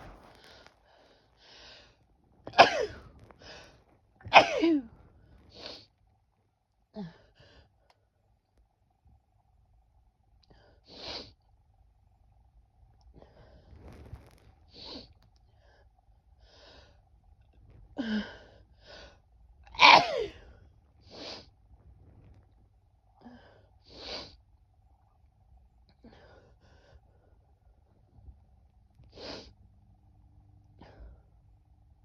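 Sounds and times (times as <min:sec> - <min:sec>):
woman sneezing: 0:02.6 - 0:03.0, 0:04.3 - 0:04.9, 0:19.8 - 0:20.3.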